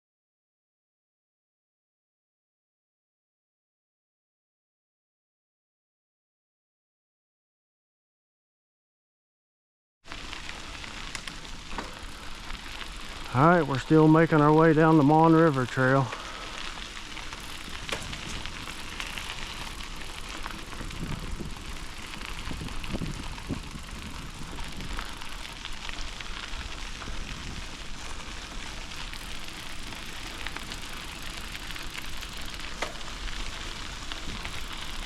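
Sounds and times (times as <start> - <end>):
bicycle tyres rolling on gravel: 10.0 - 35.0.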